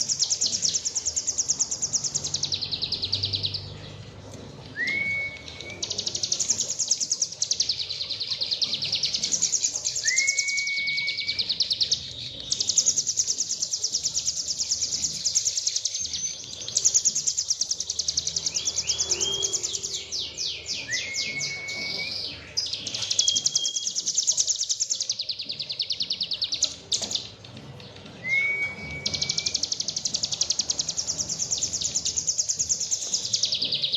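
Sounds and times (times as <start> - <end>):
bird high rapid trills: 16.6 - 25.1.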